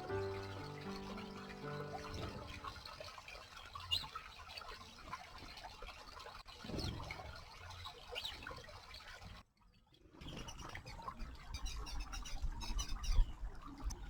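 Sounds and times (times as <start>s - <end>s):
small birds chirping: 0.0s - 2.7s
water splashing and trickling: 0.0s - 14.0s.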